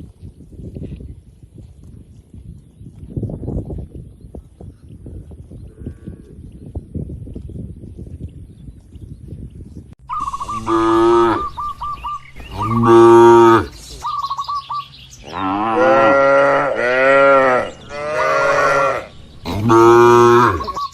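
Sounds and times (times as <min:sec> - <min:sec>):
quick chirping trill: 0:10.0 - 0:13.1
cattle mooing: 0:10.5 - 0:11.6, 0:12.5 - 0:13.7, 0:15.2 - 0:20.8.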